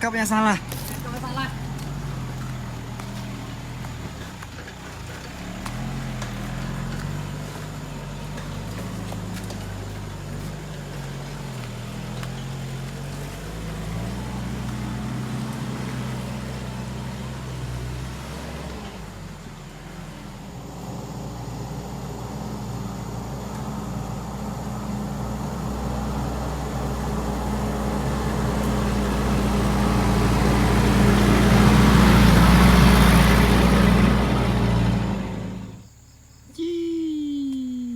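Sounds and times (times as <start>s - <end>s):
truck engine revving: 0.0s - 35.9s.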